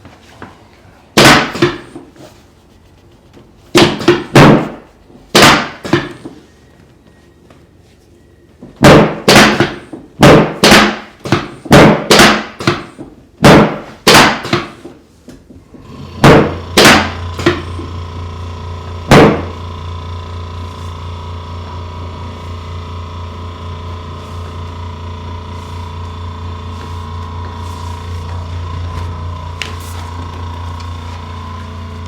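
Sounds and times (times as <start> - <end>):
low electric hum: 15.4 - 32.0.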